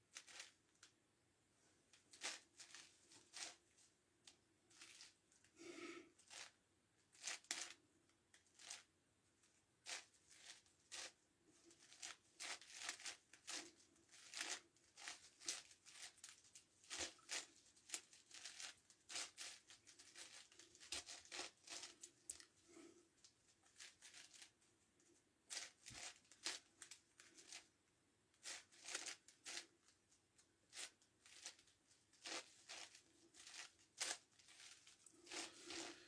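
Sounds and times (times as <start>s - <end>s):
puzzle cube clicking and scraping: 0.2s - 0.6s, 11.8s - 22.5s, 28.4s - 29.8s, 30.7s - 36.0s.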